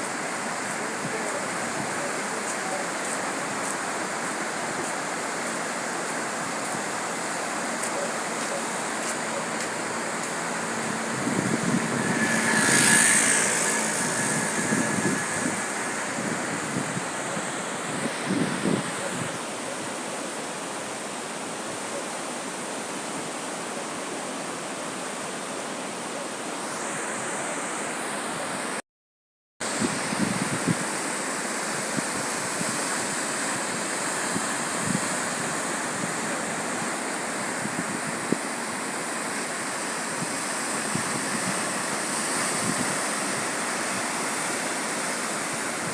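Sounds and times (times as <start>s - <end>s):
surf breaking on shore: 0.0s - 21.7s, 29.7s - 45.9s
wind on microphone: 7.9s - 19.5s, 29.6s - 31.1s, 31.7s - 38.8s, 39.4s - 45.9s.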